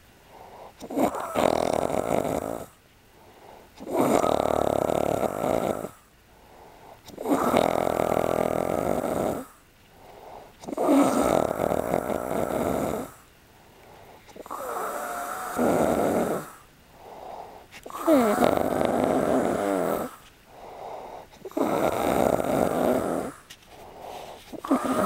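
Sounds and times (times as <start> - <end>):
man snoring: 0.4 - 2.8, 3.8 - 6.0, 7.1 - 9.5, 10.6 - 13.2, 14.4 - 23.4, 24.5 - 25.0.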